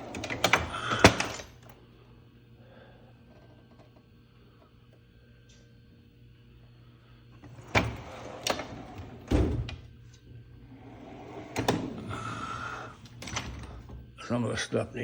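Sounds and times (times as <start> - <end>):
drawer sliding rumble: 0.0 - 1.4, 7.4 - 9.8, 10.7 - 14.0.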